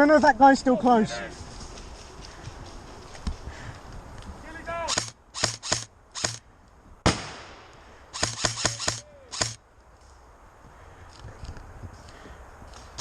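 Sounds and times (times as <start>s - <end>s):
airsoft gun shots: 4.9s - 6.4s, 7.0s - 9.6s.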